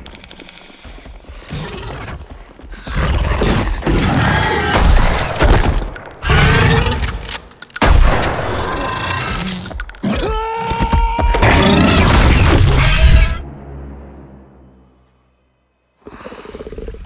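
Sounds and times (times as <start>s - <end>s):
shattering and breaking: 4.8s - 10.3s.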